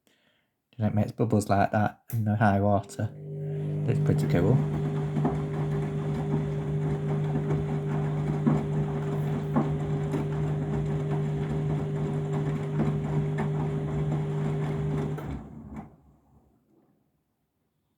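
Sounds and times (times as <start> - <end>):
washing machine hum: 3.1 - 16.4
water sloshing in drum: 4.0 - 15.2.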